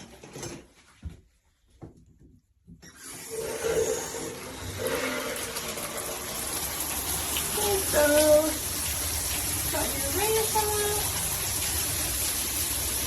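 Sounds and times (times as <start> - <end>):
shower water spraying into bathtub: 2.9 - 13.0.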